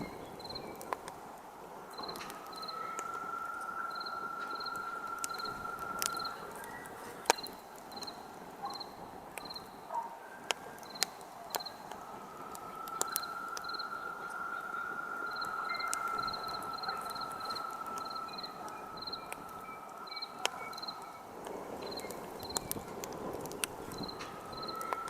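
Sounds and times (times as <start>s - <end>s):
campfire crackling and popping: 0.0s - 25.0s
crickets chirping: 0.0s - 25.0s
steady high hum: 1.2s - 9.8s, 11.2s - 25.0s.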